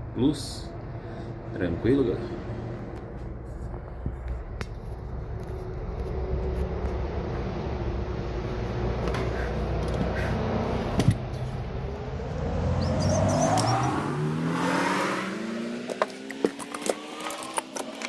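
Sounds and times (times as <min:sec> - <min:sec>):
vehicle engine accelerating: 0:05.0 - 0:18.0.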